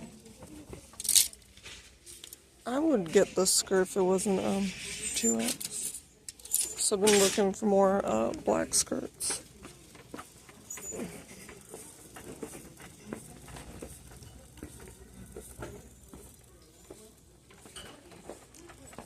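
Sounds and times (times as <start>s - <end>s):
hangers sliding on metal rack: 4.4s - 7.5s.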